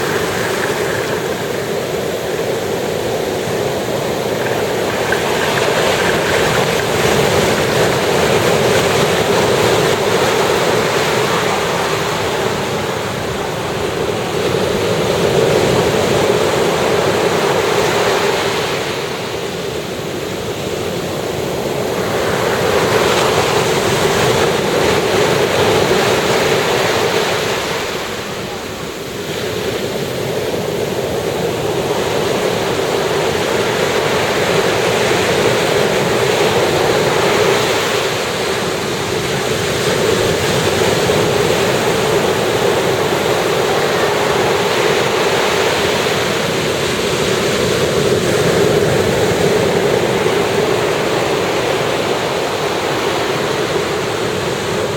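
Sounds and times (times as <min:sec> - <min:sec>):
ocean waves breaking: 0:00.0 - 0:54.9.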